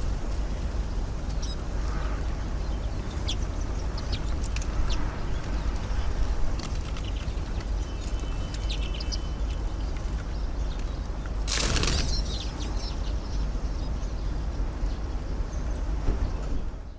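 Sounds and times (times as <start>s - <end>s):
small birds chirping: 0.0s - 16.9s
wind buffeting microphone: 0.0s - 16.9s
bird wings flapping: 11.4s - 12.7s.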